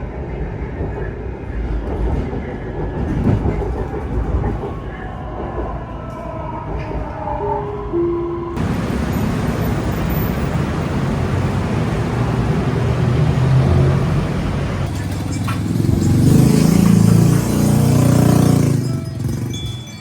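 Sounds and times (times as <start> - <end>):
road traffic: 8.5 - 20.0
vehicle engine running close: 8.6 - 19.5.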